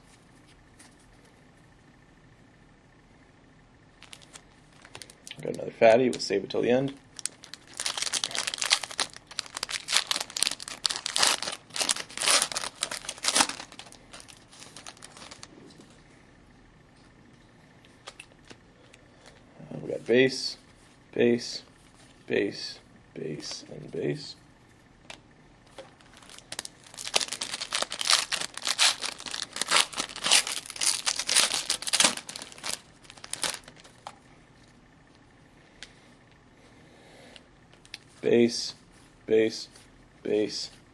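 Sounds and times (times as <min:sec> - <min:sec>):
card pack wrapper tearing: 0:07.2 - 0:15.5, 0:26.0 - 0:34.0.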